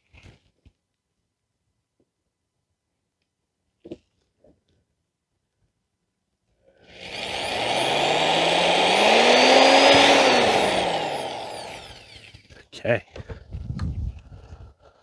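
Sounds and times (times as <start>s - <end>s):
motor passing: 7.0s - 12.5s.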